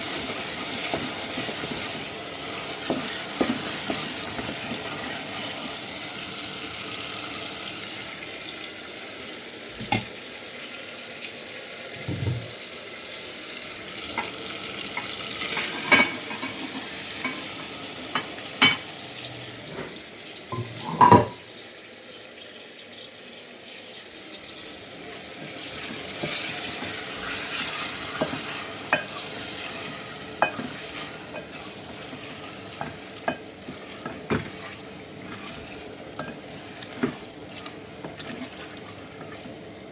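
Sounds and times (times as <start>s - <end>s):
food sizzling in pot: 0.0s - 39.9s.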